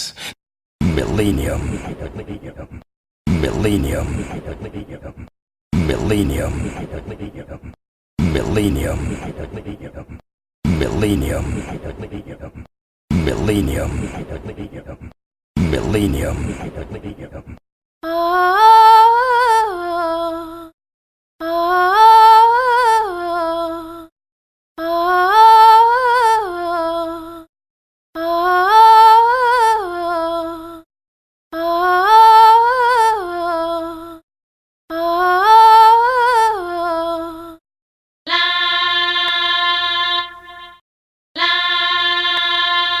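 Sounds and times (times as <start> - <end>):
wordless sung vocal phrase: 0.0 - 17.6.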